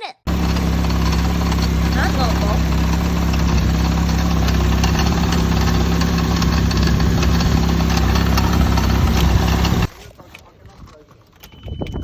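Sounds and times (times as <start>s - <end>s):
car engine idling: 0.3s - 9.9s.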